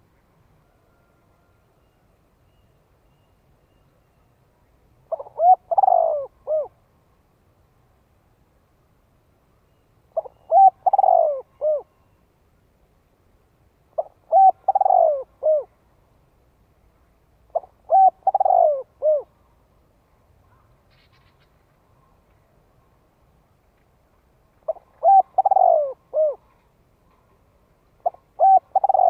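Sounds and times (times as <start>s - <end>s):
dove cooing: 5.1s - 6.8s, 10.2s - 11.9s, 14.0s - 15.7s, 17.5s - 19.3s, 24.6s - 26.5s, 28.0s - 29.0s.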